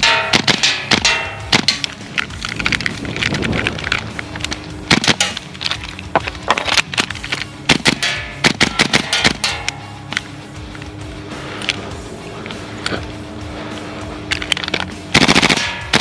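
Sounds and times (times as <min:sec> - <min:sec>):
sharp irregular cracks: 0:00.0 - 0:10.3, 0:14.2 - 0:16.0
background music: 0:00.0 - 0:16.0.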